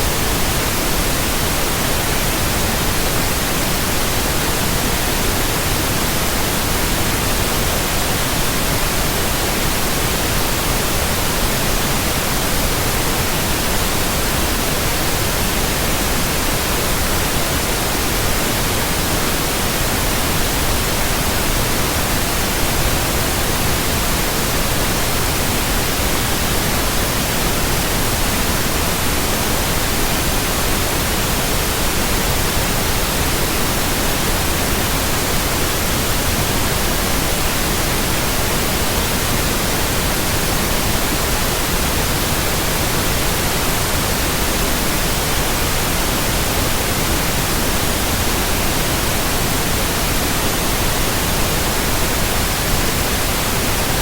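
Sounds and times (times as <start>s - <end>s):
steady white noise hiss: 0.0s - 54.0s.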